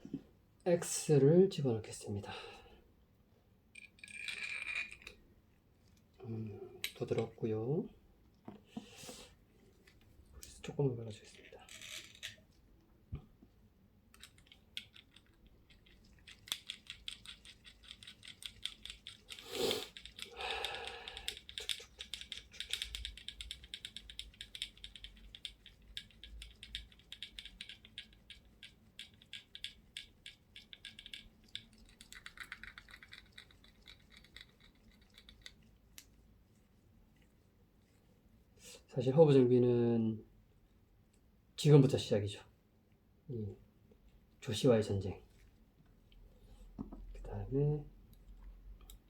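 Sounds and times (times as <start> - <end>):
metal bicycle parts clicking: 11.7 - 12.4, 14.2 - 20.4, 21.1 - 34.6.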